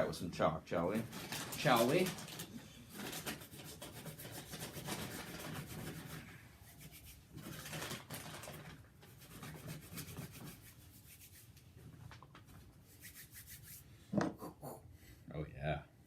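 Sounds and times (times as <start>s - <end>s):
hands rubbing in chalk: 3.1s - 7.8s, 9.1s - 11.8s, 12.8s - 14.8s.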